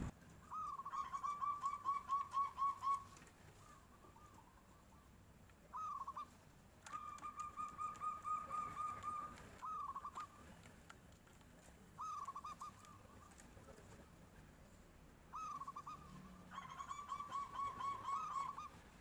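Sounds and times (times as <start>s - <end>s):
dove cooing and trilling: 0.0s - 3.2s, 5.7s - 6.3s, 6.9s - 10.3s, 12.0s - 13.4s, 15.4s - 18.8s.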